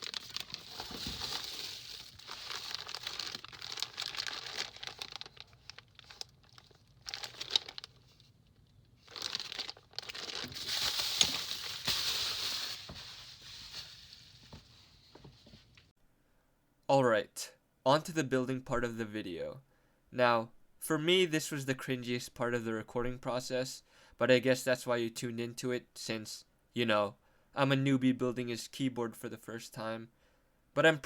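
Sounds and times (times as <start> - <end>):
plastic packaging crinkling: 0.0 - 15.8.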